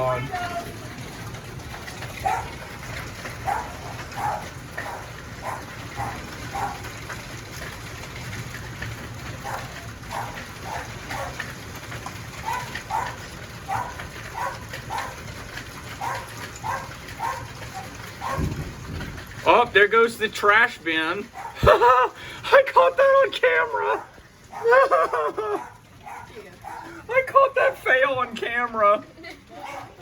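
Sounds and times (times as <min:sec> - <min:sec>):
heavy hail and rain: 0:00.0 - 0:30.0
dog barking: 0:02.2 - 0:02.6, 0:03.4 - 0:06.9, 0:09.4 - 0:11.5, 0:12.4 - 0:15.3, 0:16.0 - 0:18.6, 0:21.3 - 0:21.8, 0:23.8 - 0:24.9, 0:25.5 - 0:27.0, 0:29.6 - 0:30.0.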